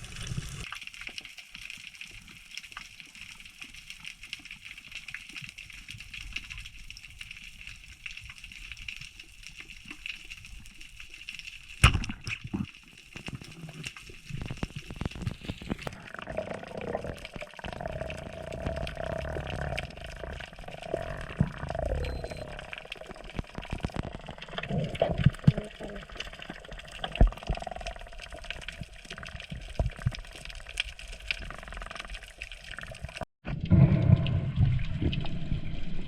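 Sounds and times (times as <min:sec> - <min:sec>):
underwater crackling hiss: 0:00.0 - 0:00.6
low rumble: 0:20.2 - 0:24.6, 0:33.5 - 0:36.0.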